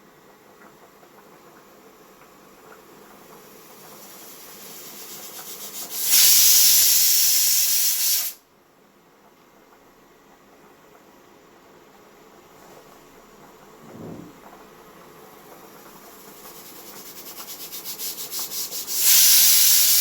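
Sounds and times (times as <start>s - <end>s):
pressure cooker hissing steam: 3.4s - 8.4s, 15.7s - 20.0s.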